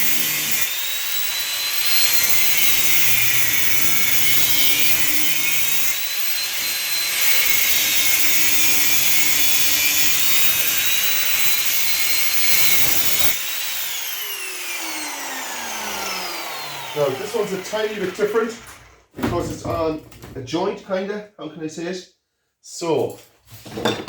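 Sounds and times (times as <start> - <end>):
angle grinder cutting metal: 0.0 - 19.1.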